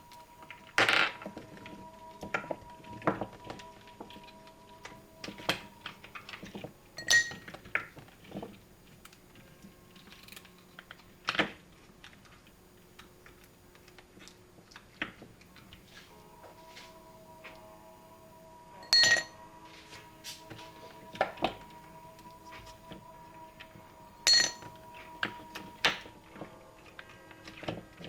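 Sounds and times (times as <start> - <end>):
small objects clicking and clinking: 0.1 - 15.8, 20.4 - 26.2.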